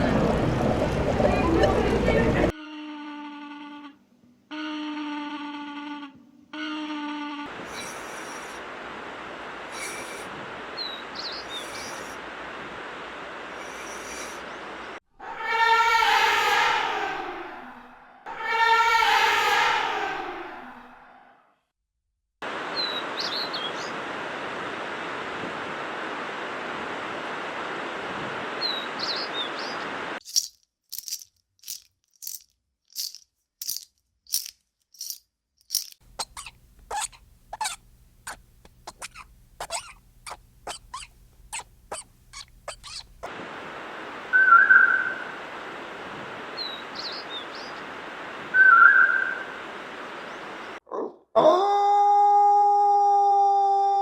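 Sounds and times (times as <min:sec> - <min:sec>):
steady outdoor hiss: 0:00.0 - 0:02.5, 0:07.5 - 0:15.0, 0:22.4 - 0:30.2, 0:36.0 - 0:50.8
sharp rattle: 0:30.2 - 0:43.3
small bird chirping: 0:36.1 - 0:43.3
loud whistled animal calls: 0:36.2 - 0:43.3, 0:44.3 - 0:45.4, 0:48.5 - 0:49.6.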